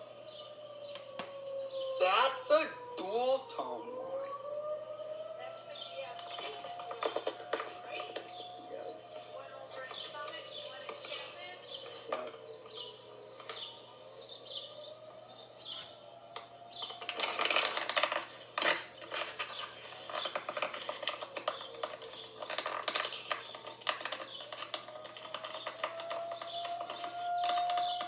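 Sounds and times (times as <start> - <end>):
birds chirping: 0.0 - 28.0
distant warning siren: 0.0 - 28.0
clicking chatter: 5.4 - 15.2, 15.8 - 28.0.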